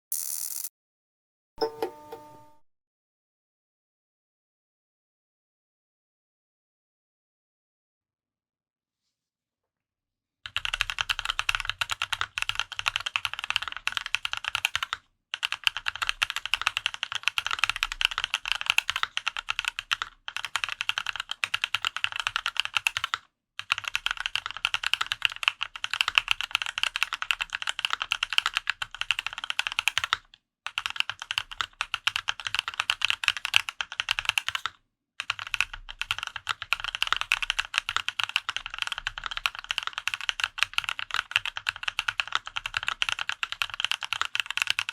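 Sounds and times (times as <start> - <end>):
fast typing on mechanical keyboard: 10.5 - 44.9.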